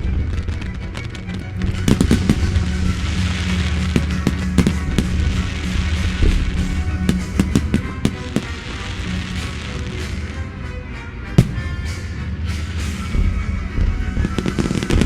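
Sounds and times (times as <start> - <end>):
fireworks crackling hiss: 0.0 - 10.4
fireworks bangs: 0.0 - 10.5, 11.4 - 13.2, 14.2 - 15.0
music with low notes: 0.0 - 15.0.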